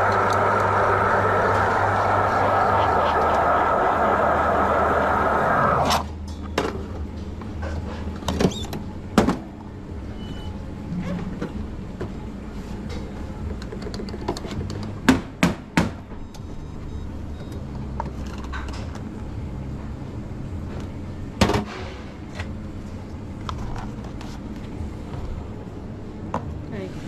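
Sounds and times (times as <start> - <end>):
loud steady rush: 0.0 - 6.1
low machine hum: 0.0 - 13.8.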